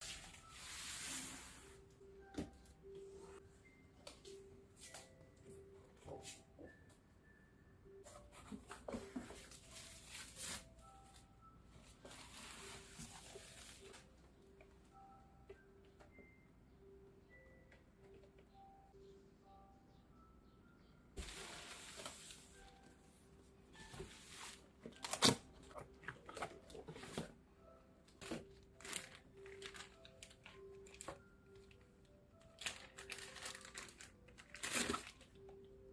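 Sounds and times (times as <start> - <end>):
soft background music: 0.0 - 35.9
plastic and cardboard rustling: 8.1 - 11.2, 11.8 - 14.1, 21.2 - 22.8, 23.8 - 27.4, 28.1 - 31.8, 32.5 - 35.4
packaging rustling: 28.2 - 31.3, 32.4 - 35.4.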